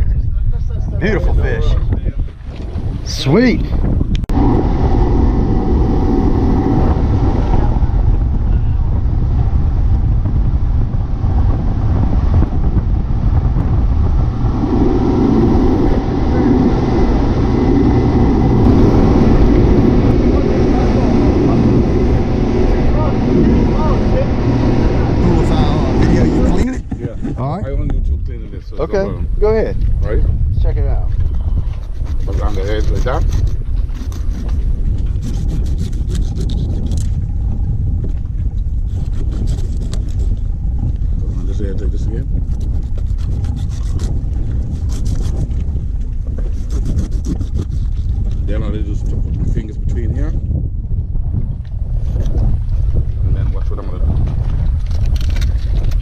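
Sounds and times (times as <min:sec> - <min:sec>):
low rumble: 0:00.0 - 0:56.0
wind buffeting microphone: 0:00.0 - 0:56.0
boat engine running: 0:10.7 - 0:27.5
knife scraping fish skin: 0:31.8 - 0:34.6, 0:35.2 - 0:37.0, 0:38.9 - 0:40.3, 0:42.7 - 0:45.5, 0:46.4 - 0:48.1.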